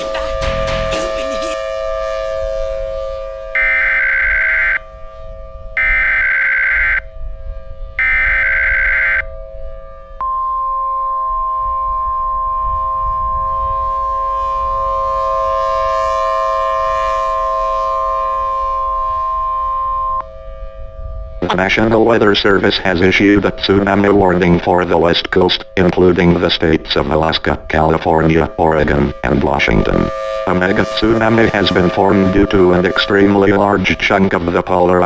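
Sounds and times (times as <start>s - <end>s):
steady background tone: 0.0s - 35.0s
data burst screech: 8.0s - 9.2s
two-tone attention signal: 10.2s - 13.9s.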